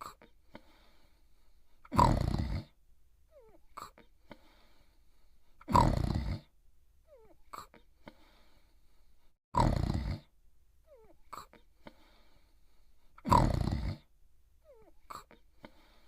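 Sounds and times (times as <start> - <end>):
cartoon dog snoring: 1.9 - 2.8, 5.6 - 7.8, 9.6 - 11.7, 13.2 - 14.1.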